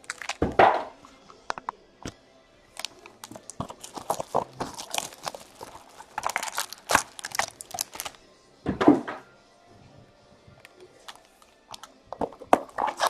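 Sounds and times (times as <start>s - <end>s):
plastic wrap crinkling and tearing: 0.0s - 0.5s, 2.7s - 8.2s, 12.5s - 13.0s.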